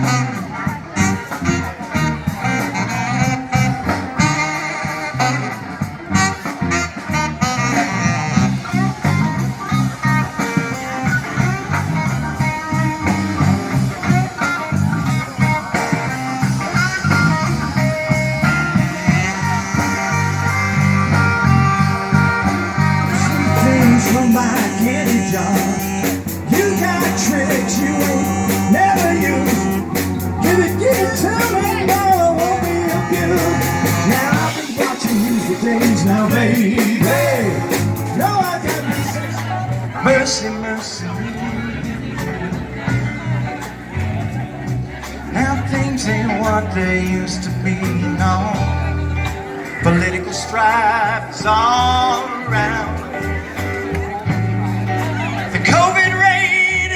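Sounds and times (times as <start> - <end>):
drums and cymbals: 0.0 - 40.6
bass guitar: 0.0 - 56.9
electric guitar: 0.0 - 56.9
keyboards: 0.0 - 56.9.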